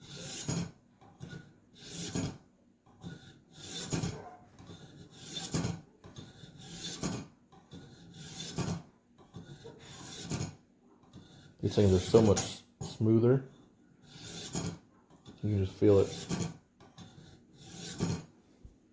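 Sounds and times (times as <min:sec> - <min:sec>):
knife rasping on sharpener: 0:00.0 - 0:18.4.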